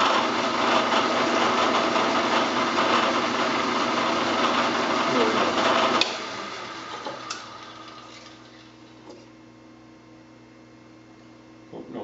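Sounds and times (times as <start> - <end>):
milling machine drilling: 0.0 - 9.1.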